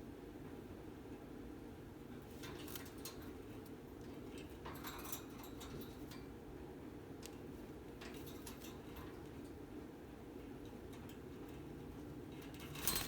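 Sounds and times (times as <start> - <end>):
light clicks and taps: 7.2 - 7.4.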